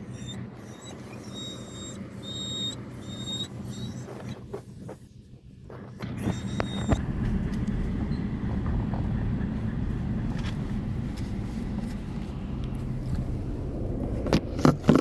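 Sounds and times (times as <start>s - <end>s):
car engine: 0.0s - 15.0s
tyres rumbling on gravel: 4.0s - 15.0s
short high squeak: 6.2s - 7.0s.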